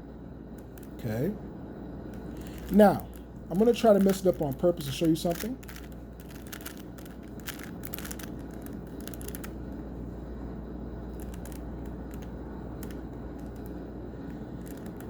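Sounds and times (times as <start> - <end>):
steady low hum: 0.0 - 15.0
puzzle cube twisting clicks: 3.7 - 9.6, 11.2 - 13.8, 14.6 - 15.0.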